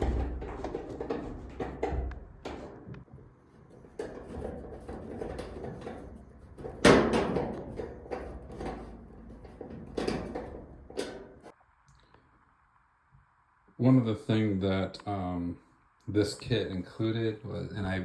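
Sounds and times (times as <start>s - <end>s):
loud metal bang: 0.0s - 2.7s
sheet metal knocks and rattles: 0.0s - 11.5s.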